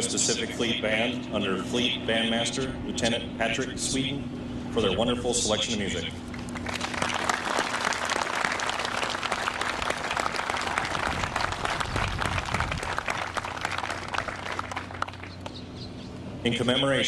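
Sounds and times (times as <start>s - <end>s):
audience applauding: 6.3s - 15.5s.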